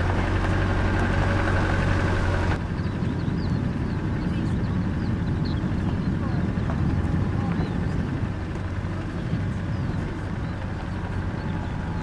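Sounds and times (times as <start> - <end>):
vehicle engine hum: 0.0 - 12.0
bird chirps: 2.6 - 6.8.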